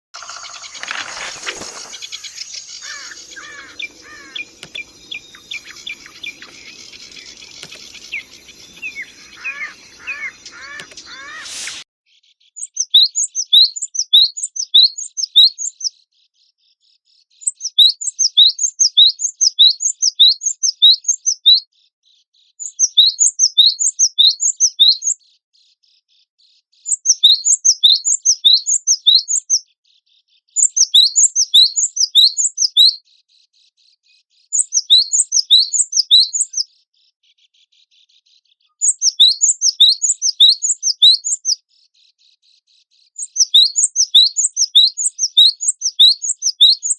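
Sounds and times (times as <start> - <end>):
bird singing sharp high notes: 0.2 - 11.9.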